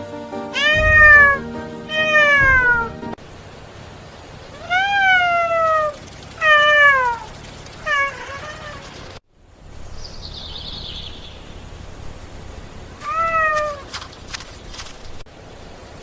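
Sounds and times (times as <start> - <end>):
cat meowing: 0.5 - 3.0, 4.6 - 9.1, 13.0 - 14.0.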